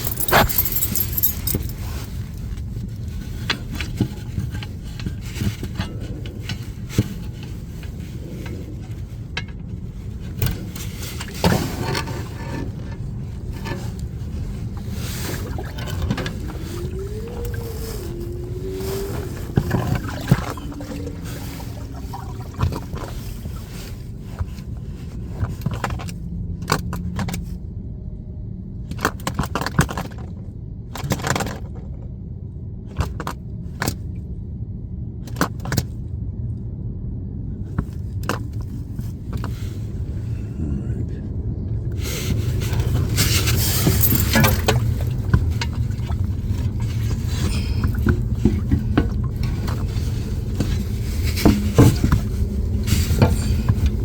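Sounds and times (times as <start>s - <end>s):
hands knocking and scraping fittings: 0.0s - 1.8s, 42.6s - 54.0s
steady low rumble: 0.0s - 25.6s, 35.9s - 54.0s
rustling and scraping: 0.0s - 26.2s, 37.7s - 41.1s, 41.8s - 54.0s.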